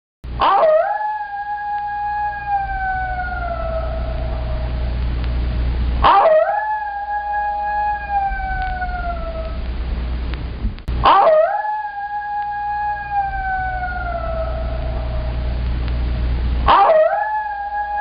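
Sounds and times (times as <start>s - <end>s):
low steady rumble: 0.3s - 18.0s
coyote howling: 0.4s - 5.0s, 6.0s - 9.7s, 11.0s - 15.6s, 16.7s - 18.0s.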